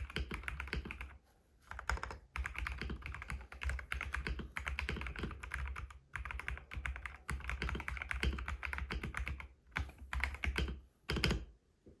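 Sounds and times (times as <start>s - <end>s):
mechanical keyboard typing: 0.0s - 11.5s.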